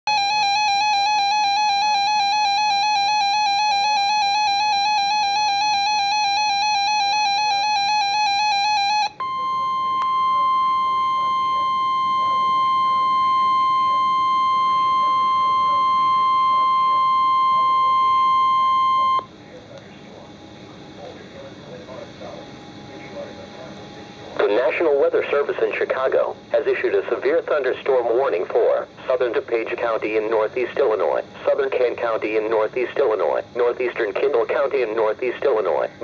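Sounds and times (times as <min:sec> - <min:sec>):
steady alarm tone: 0:00.0 - 0:19.4
warbling electronic alarm: 0:00.1 - 0:19.3.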